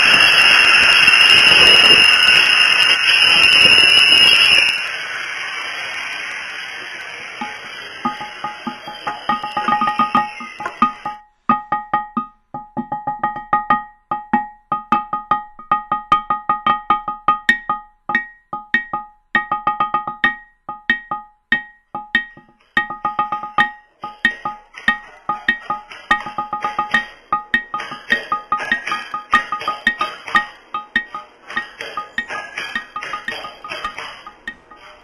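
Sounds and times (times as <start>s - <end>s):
hiss: 0.0s - 11.0s.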